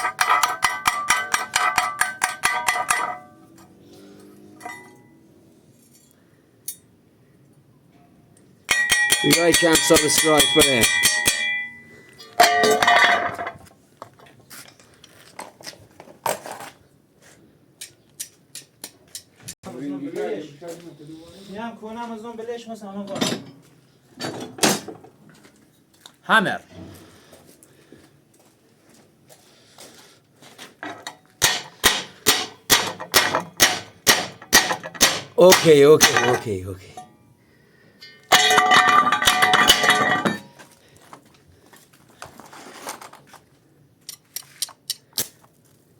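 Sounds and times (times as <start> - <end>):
hammer striking metal: 0.0 - 3.5, 8.7 - 13.3, 31.4 - 37.1
metal clinks and taps: 0.0 - 3.6, 8.7 - 13.2
ringing metallic clang: 0.2 - 3.6, 4.5 - 5.2, 8.7 - 13.4, 38.0 - 40.6.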